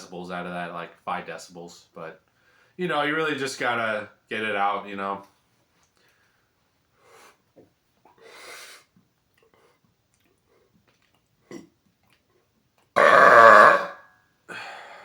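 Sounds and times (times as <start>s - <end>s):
short gulp: 11.4s - 11.8s
man burping loudly: 13.0s - 14.0s.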